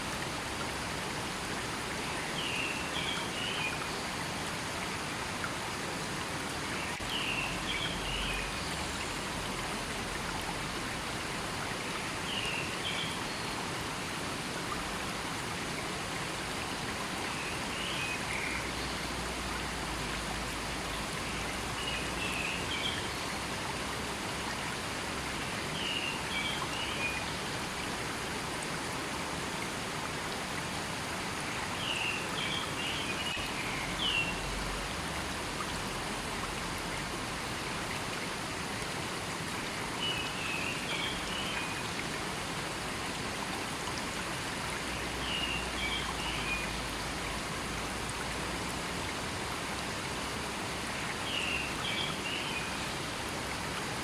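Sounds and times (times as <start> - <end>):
river water flowing: 0.0 - 54.0.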